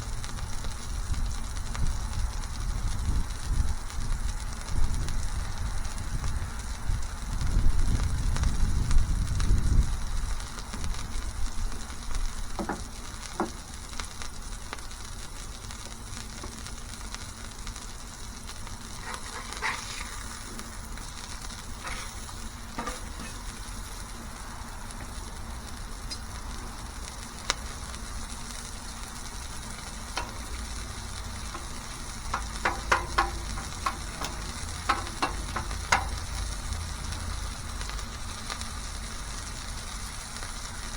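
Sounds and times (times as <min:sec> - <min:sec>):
patties sizzling on a griddle: 0:00.0 - 0:40.9
sharp clicks and taps: 0:29.8 - 0:36.7.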